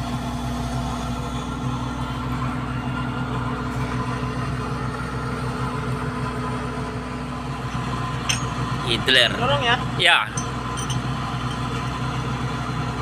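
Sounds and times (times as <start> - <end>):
diesel engine humming steadily: 0.0 - 13.0.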